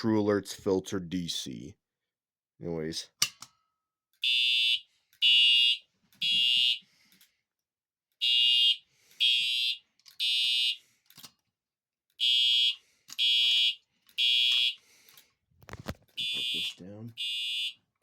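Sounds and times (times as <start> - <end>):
fire alarm horn blasts: 4.2 - 6.9, 8.2 - 10.8, 12.2 - 14.8, 16.2 - 18.0.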